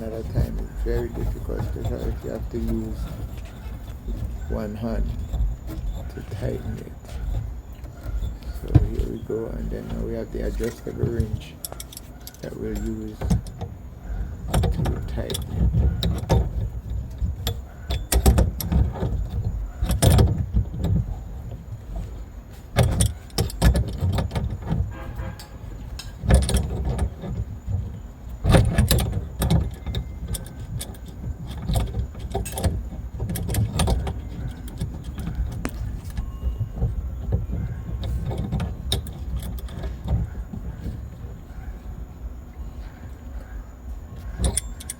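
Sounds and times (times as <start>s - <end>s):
low handling rumble: 0.0s - 44.9s
wrench clinking on metal nut: 10.5s - 13.6s, 44.2s - 44.9s.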